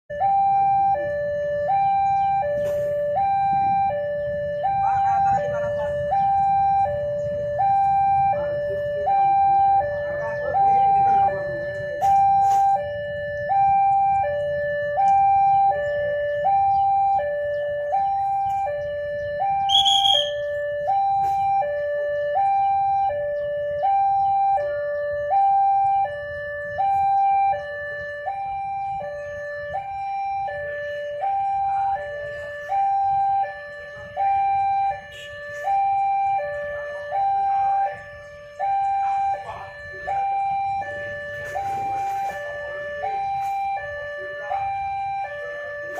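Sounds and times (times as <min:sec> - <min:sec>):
two-tone hi-lo siren: 0:00.1 - 0:45.9.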